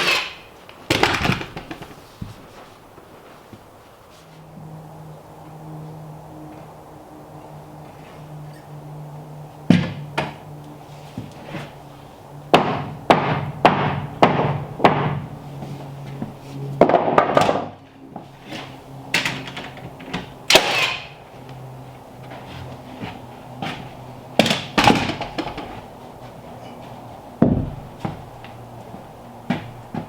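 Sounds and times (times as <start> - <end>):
steady low hum: 1.7 - 30.0
heavy knocks on wood: 12.5 - 15.3, 27.4 - 28.3, 29.5 - 30.0.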